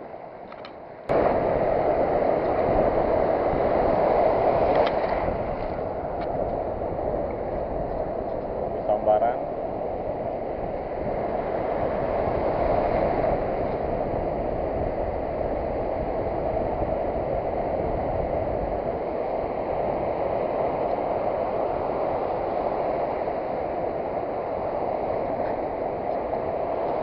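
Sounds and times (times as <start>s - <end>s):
surf washing on beach: 0.0s - 27.0s.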